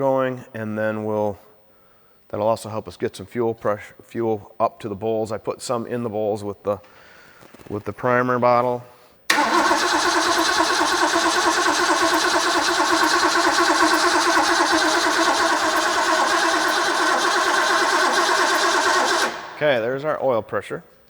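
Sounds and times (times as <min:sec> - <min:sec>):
starter motor cranking engine: 0:09.3 - 0:19.8.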